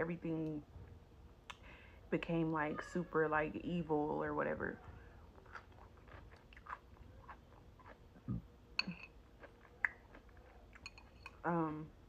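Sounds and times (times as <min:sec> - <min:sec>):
chewing crunchy food: 0:05.2 - 0:11.4
wet mouth clicks: 0:09.7 - 0:10.2.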